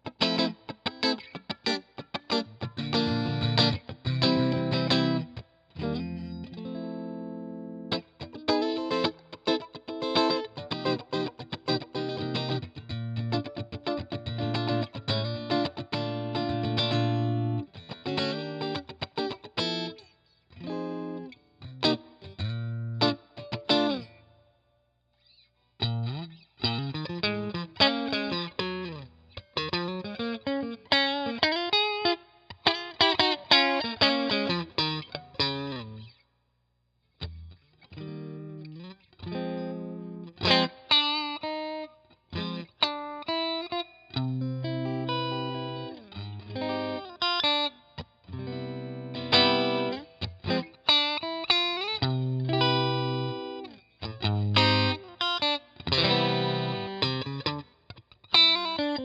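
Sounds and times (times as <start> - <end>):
clean electric guitar: 0.0 - 24.5, 25.2 - 36.2, 37.1 - 59.0.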